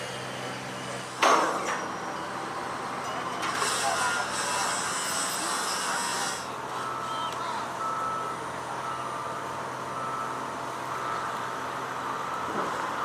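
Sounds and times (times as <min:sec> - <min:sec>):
outdoor hum: 0:00.0 - 0:13.0
backup alarm beeping: 0:06.8 - 0:12.7.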